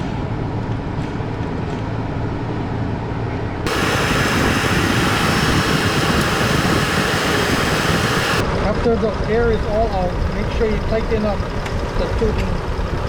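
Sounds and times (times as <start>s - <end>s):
car engine idling: 3.7s - 8.4s
loud steady hiss: 3.7s - 8.4s.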